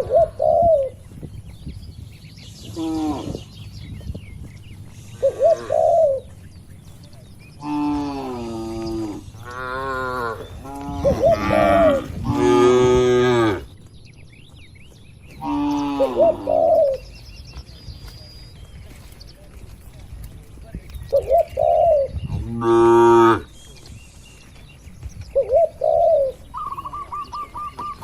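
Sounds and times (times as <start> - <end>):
dove cooing: 0.0 - 1.0, 5.1 - 6.4, 7.6 - 13.7, 15.4 - 17.2, 21.1 - 23.5, 25.3 - 28.0
small birds chirping faintly: 0.0 - 28.0
cattle mooing: 7.6 - 13.7.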